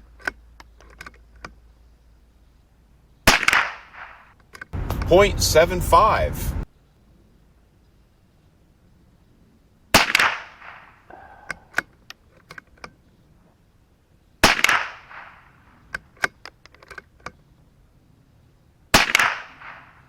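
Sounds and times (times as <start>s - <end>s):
rifle shots with echo: 3.2s - 5.1s, 9.9s - 11.2s, 14.4s - 15.6s, 18.9s - 20.0s
rifle bolt metallic clicks: 15.9s - 17.4s.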